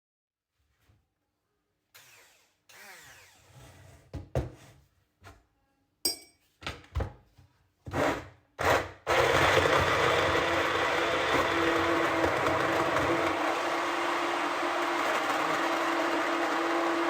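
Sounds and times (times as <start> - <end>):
electric mixer motor running: 9.1 - 17.0.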